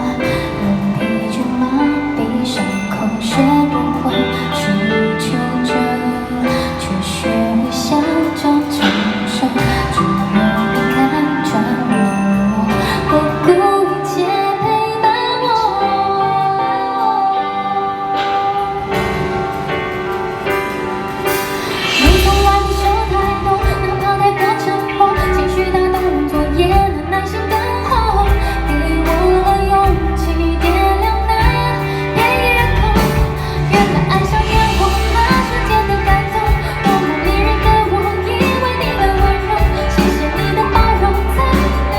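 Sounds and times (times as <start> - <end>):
woman singing pop ballad: 0.0 - 20.2, 21.3 - 41.9
band playing: 0.0 - 41.9
bass guitar: 19.0 - 41.9.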